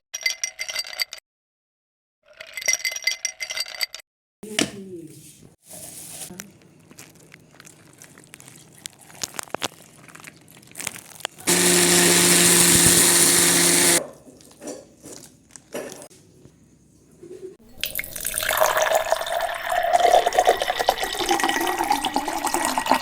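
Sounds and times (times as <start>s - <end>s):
electric blender motor running: 11.5s - 14.0s.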